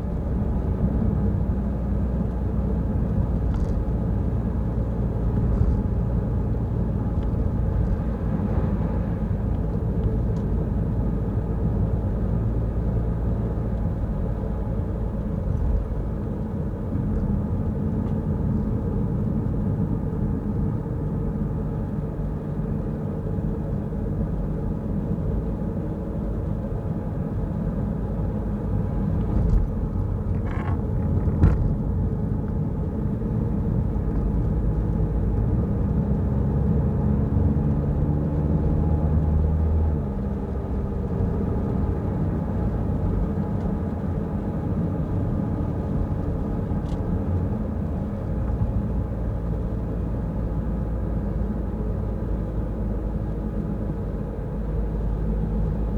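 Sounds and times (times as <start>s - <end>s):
road and engine rumble: 0.0s - 55.9s.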